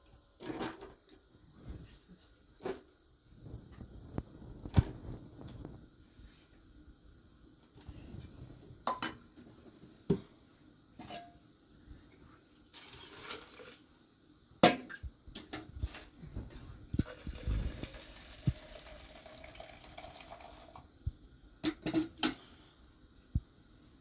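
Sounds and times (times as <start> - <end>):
pots and dishes clinking: 11.0 - 11.4.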